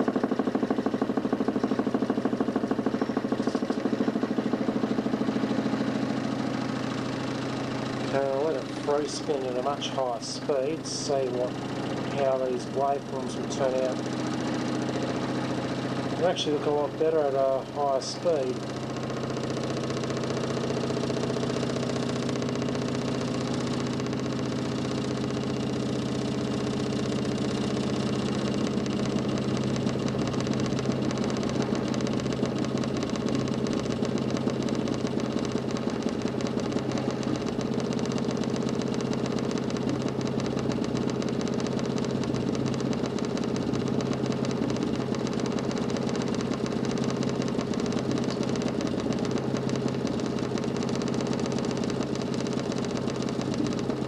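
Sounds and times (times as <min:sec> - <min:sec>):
motor spinning disc: 0:00.0 - 0:54.0
fast rattle: 0:18.2 - 0:54.0.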